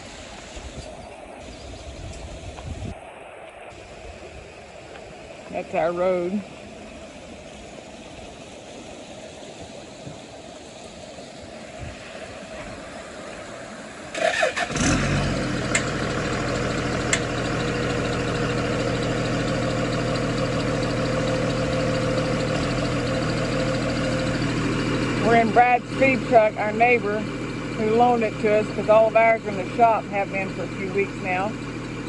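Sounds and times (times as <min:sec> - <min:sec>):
truck engine starting and idling: 0:11.6 - 0:32.0.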